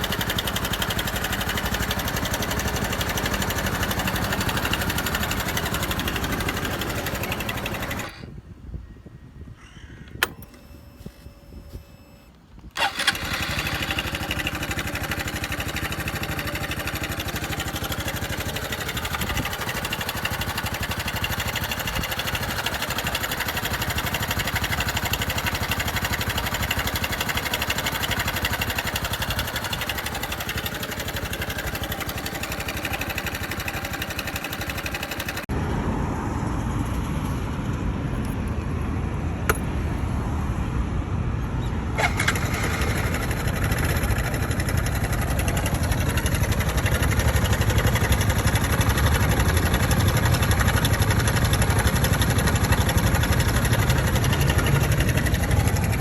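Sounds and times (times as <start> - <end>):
deeper engine sound: 0.0 - 8.2, 38.8 - 56.0
motorcycle engine running: 0.0 - 8.2, 12.8 - 35.6, 42.0 - 56.0.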